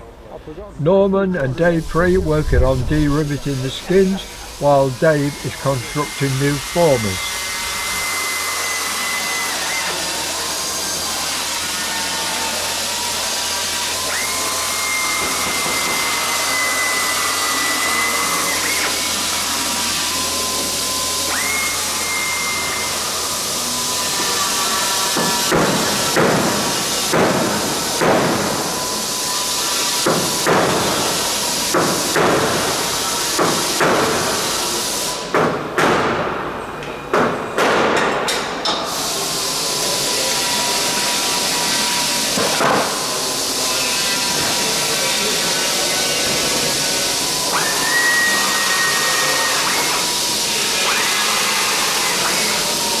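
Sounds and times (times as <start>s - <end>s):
steady hiss: 0.8s - 8.0s
high whine shifting pitch: 0.8s - 8.1s.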